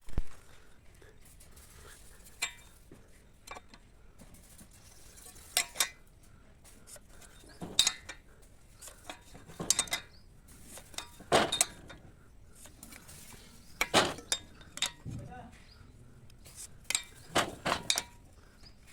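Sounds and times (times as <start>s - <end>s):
metal pieces knocking together: 7.4s - 8.2s, 8.8s - 15.1s, 16.5s - 18.2s.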